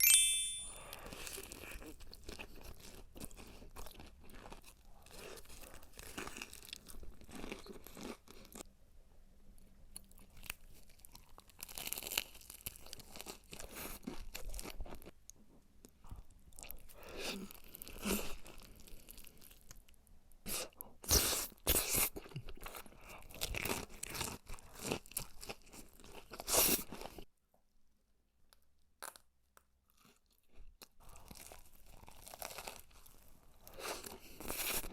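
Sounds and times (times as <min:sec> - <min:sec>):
crunching fried chicken: 0:01.4 - 0:08.6, 0:10.0 - 0:15.2, 0:21.2 - 0:27.3, 0:28.5 - 0:34.9
chewing: 0:29.0 - 0:34.9.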